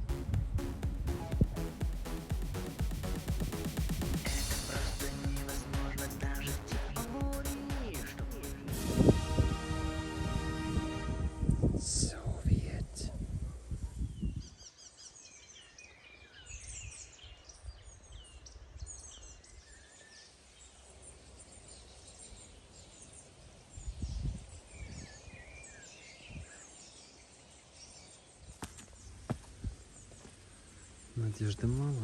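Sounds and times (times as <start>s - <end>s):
songbirds chirping and trilling: 12.0s - 32.0s.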